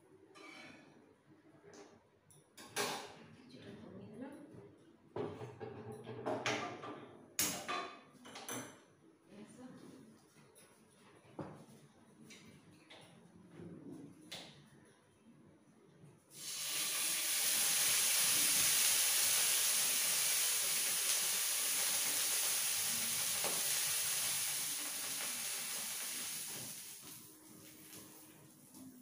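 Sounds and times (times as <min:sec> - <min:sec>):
water sizzling in hot oil: 0:16.3 - 0:28.8.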